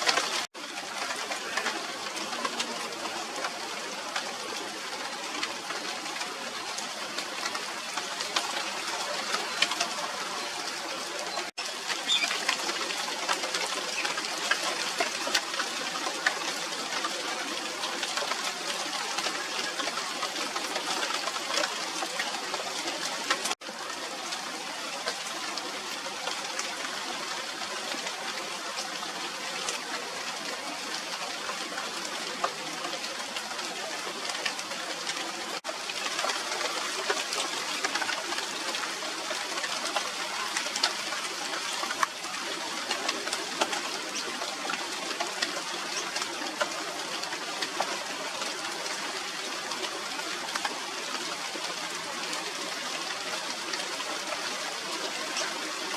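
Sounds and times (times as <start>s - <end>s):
rain falling on leaves: 0.0s - 55.9s.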